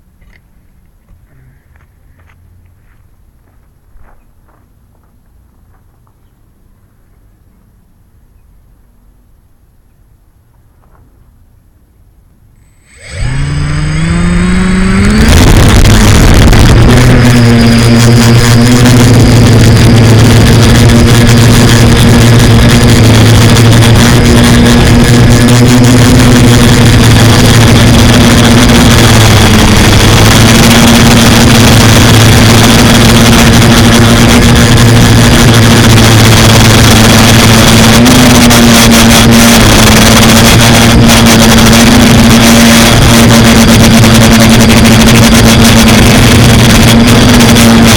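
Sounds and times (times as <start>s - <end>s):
drone propellers buzzing: 12.6s - 47.9s.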